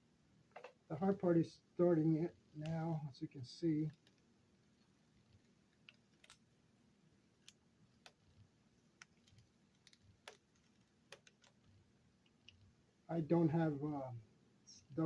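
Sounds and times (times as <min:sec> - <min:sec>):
faint sharp clicks of tape picking: 0:02.5 - 0:02.9, 0:07.3 - 0:12.8.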